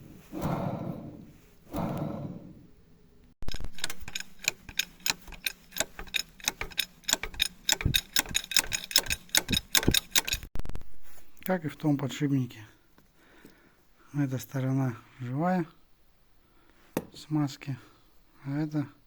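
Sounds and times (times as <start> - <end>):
bearing grinding and clicking: 3.4 - 10.5.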